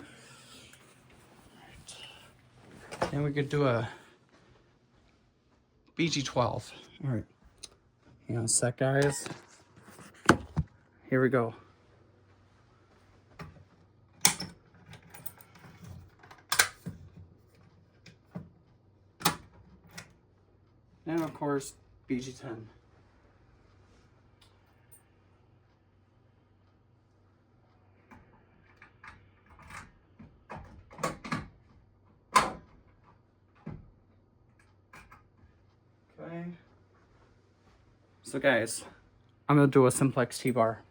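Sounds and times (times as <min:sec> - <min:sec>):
fire alarm pull station clicks: 0:16.4 - 0:16.8.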